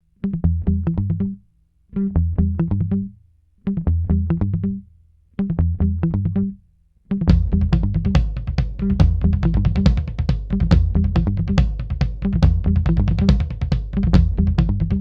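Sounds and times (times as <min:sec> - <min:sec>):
background music with bass line: 0:07.2 - 0:15.0.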